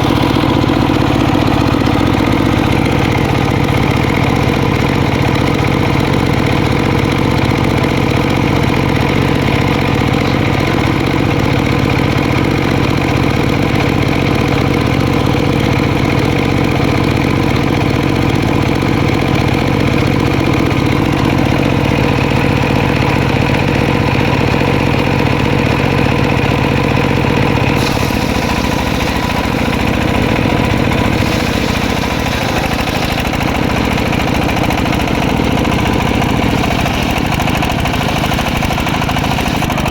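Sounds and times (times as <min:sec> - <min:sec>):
circular sawmill humming: 0:00.0 - 0:12.0, 0:19.6 - 0:39.9
bright hiss: 0:27.8 - 0:34.0.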